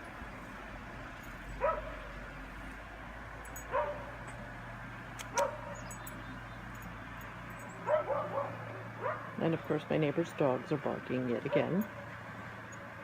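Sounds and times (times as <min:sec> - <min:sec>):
dog barking: 0:01.6 - 0:02.0, 0:03.7 - 0:04.1, 0:05.3 - 0:05.8, 0:07.8 - 0:09.4, 0:11.5 - 0:11.9.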